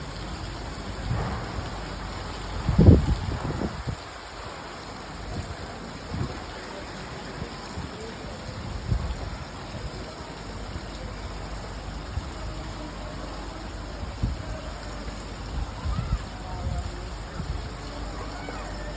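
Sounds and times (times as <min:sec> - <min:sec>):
rain falling: 0:00.0 - 0:18.9.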